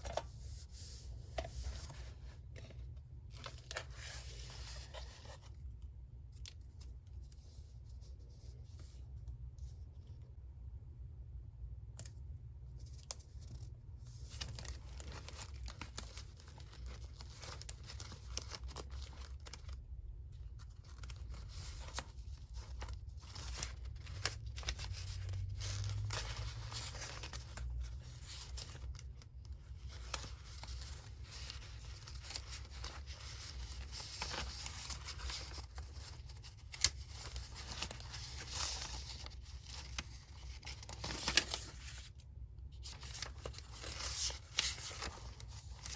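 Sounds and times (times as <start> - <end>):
paper tearing and rustling: 29.7 - 42.1, 42.8 - 45.9.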